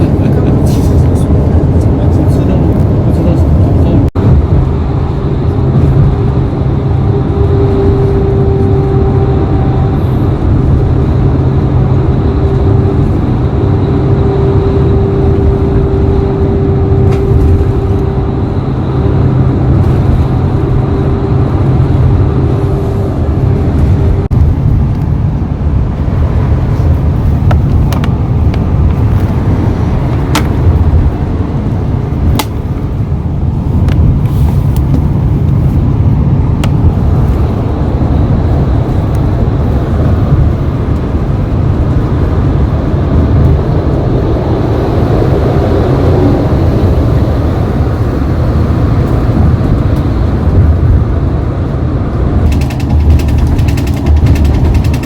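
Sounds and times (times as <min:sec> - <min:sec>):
coach engine and tyres rumbling: 0:00.0 - 0:55.0
clicks and rattles: 0:52.4 - 0:55.0.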